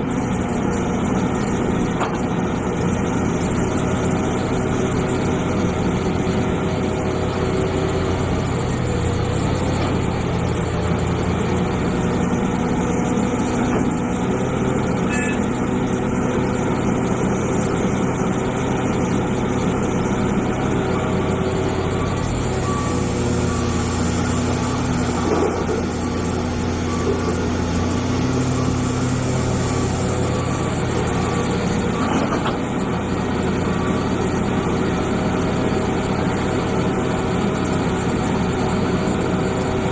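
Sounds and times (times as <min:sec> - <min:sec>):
excavator diesel engine running: 0:00.0 - 0:39.9
faint beep: 0:15.1 - 0:15.5.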